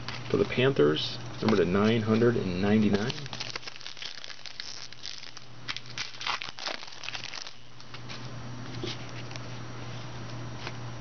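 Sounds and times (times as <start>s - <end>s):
foil wrappers crinkling: 1.5s - 8.2s.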